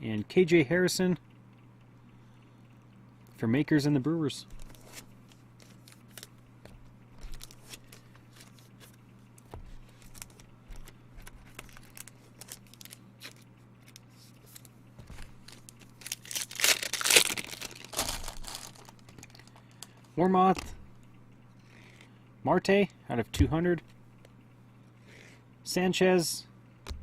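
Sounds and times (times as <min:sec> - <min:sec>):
cards clicking and rustling: 0:04.5 - 0:06.3, 0:07.2 - 0:20.7
foil wrapper tearing and crinkling: 0:07.2 - 0:08.6, 0:09.9 - 0:20.0.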